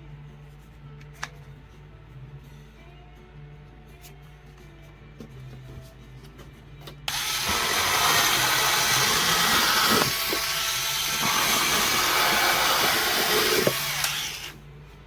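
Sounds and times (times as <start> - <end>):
electric scissors motor whir: 7.1 - 14.6.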